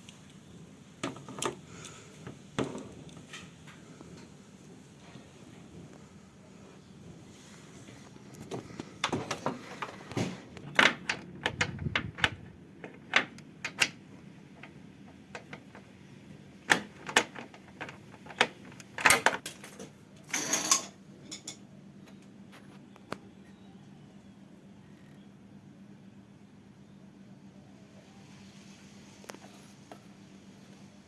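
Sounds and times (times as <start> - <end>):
hand tools clattering: 19.6 - 21.6.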